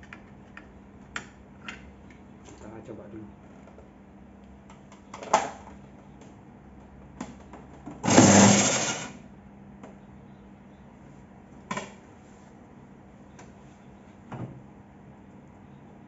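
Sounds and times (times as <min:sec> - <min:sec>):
belt sander motor running: 0:08.1 - 0:09.0.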